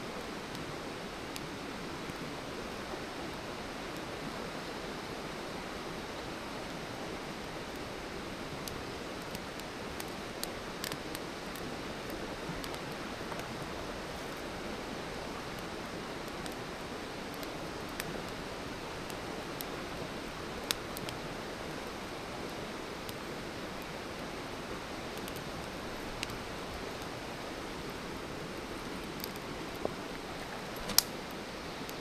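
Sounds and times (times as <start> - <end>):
campfire hissing and crackling: 0.0 - 32.0.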